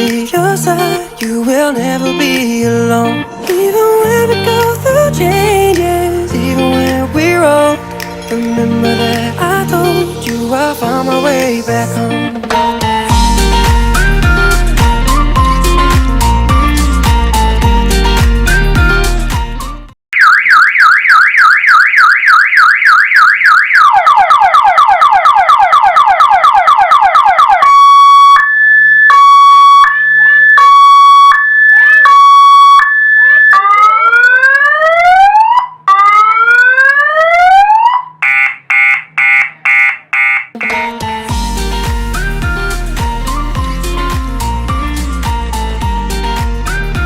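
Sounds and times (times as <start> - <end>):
electronic siren cycling tones: 20.2 - 41.1.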